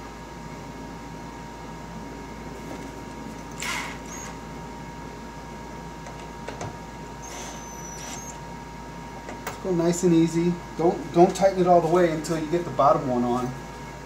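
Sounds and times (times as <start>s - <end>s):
steady background hiss: 0.0s - 14.0s.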